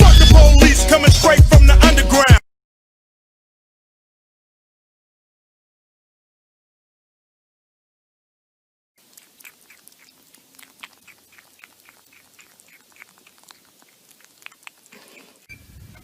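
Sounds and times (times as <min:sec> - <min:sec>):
pet chewing crunchy food: 0:09.0 - 0:15.5.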